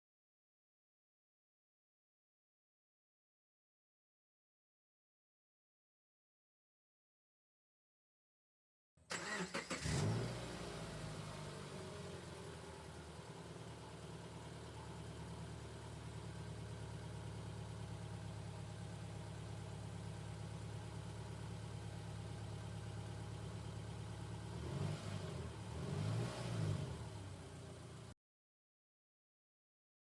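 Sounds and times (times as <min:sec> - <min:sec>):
car engine idling and revving: 0:09.1 - 0:28.1.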